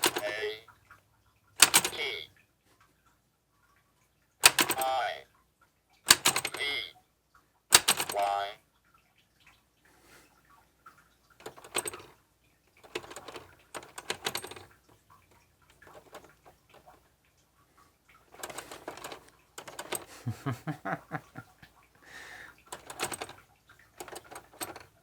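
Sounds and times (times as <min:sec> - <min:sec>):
toy typewriter keys clicking: 0:00.0 - 0:00.5, 0:01.6 - 0:02.2, 0:04.4 - 0:05.1, 0:06.1 - 0:06.8, 0:07.7 - 0:08.4, 0:11.4 - 0:12.1, 0:12.8 - 0:14.7, 0:15.8 - 0:17.0, 0:18.3 - 0:20.2, 0:22.7 - 0:23.4, 0:24.0 - 0:25.0.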